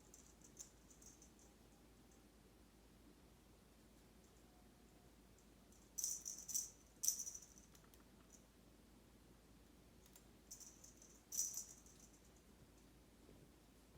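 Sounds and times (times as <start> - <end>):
kittens scratchy rattling: 0.0 - 1.5, 5.8 - 7.9, 10.5 - 12.4.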